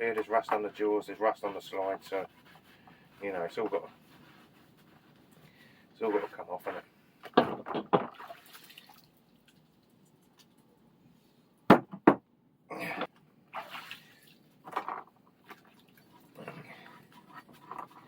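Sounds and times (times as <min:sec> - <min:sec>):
loud knocks on workbench: 0:11.7 - 0:12.2.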